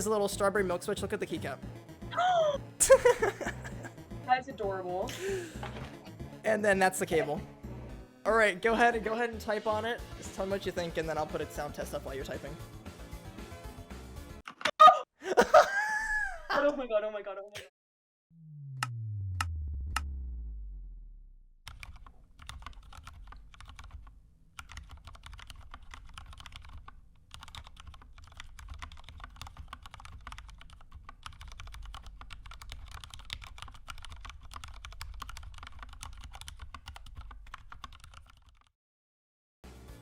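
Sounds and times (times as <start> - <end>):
low tone falling in pitch: 18.4 - 21.6
fast typing on mechanical keyboard: 21.7 - 38.7.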